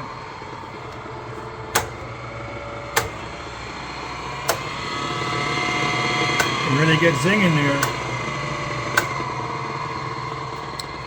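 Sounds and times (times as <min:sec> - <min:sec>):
grinder motor running: 0:00.0 - 0:11.0
steady whine: 0:00.0 - 0:11.0
sharp clicks: 0:01.7 - 0:02.2, 0:04.4 - 0:04.8, 0:06.3 - 0:06.7, 0:07.8 - 0:08.2, 0:08.9 - 0:09.3.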